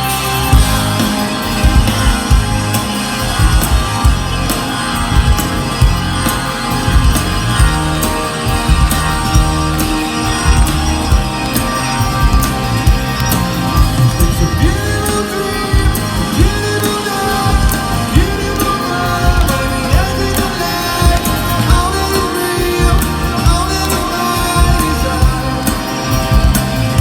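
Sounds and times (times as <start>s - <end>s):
drums keeping a steady beat: 0.0s - 27.0s
guitars: 0.0s - 27.0s
live rock band playing: 0.0s - 27.0s
person singing: 14.0s - 27.0s.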